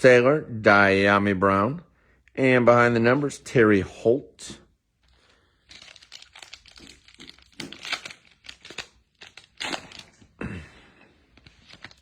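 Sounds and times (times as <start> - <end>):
plastic wrapper tearing and crinkling: 5.1 - 10.6, 11.2 - 12.0.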